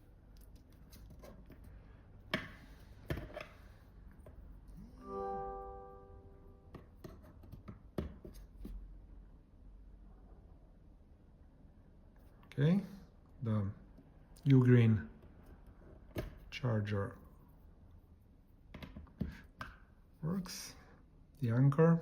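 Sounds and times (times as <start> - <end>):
short electronic chime: 5.0 - 6.7.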